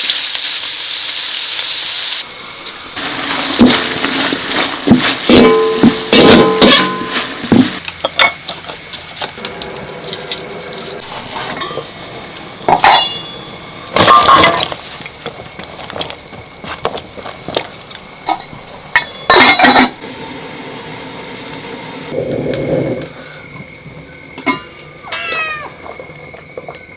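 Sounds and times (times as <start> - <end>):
utensils and pots clinking: 2.3 - 15.4, 17.5 - 26.9.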